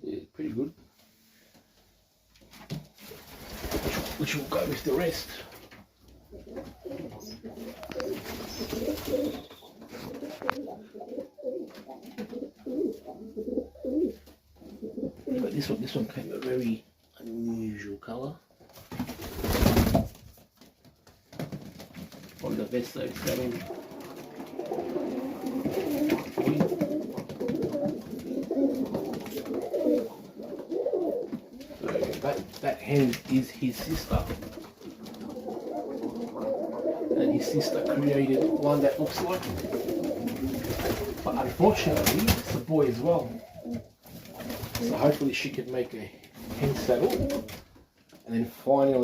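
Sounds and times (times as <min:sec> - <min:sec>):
pigeons cooing: 0:06.2 - 0:15.7, 0:23.2 - 0:32.4, 0:34.0 - 0:45.1, 0:46.6 - 0:47.6.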